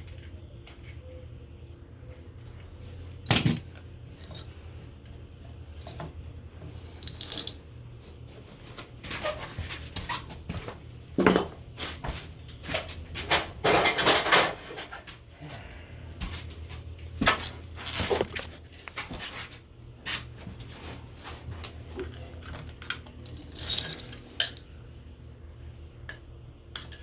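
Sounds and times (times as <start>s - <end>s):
metal parts clinking and knocking: 6.9s - 7.6s, 11.2s - 11.7s, 22.1s - 24.7s.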